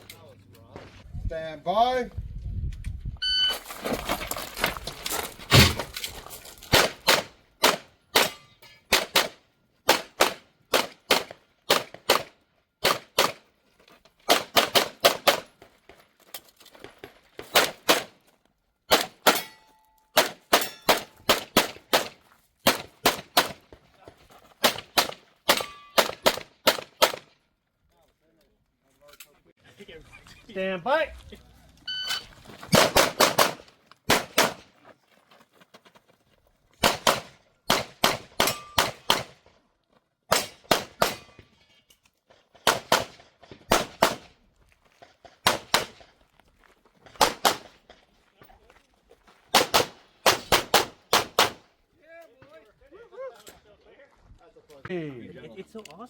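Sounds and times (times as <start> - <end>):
shot timer beep: 3.2 - 3.6, 31.9 - 32.3
pistol shots: 20.2 - 23.6, 24.6 - 27.3, 32.7 - 34.7, 36.8 - 39.4, 40.3 - 41.4, 42.6 - 44.3, 45.4 - 46.1, 47.2 - 47.8, 49.5 - 51.6.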